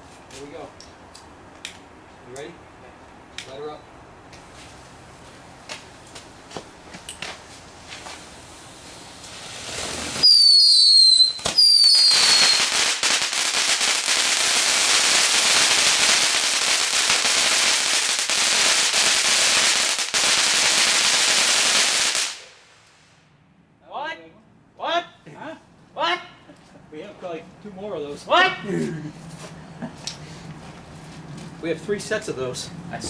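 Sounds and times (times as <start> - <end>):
firework crackling and bangs: 7.2 - 23.2
firework hiss: 7.4 - 23.2
falling firework whistles: 8.0 - 23.1.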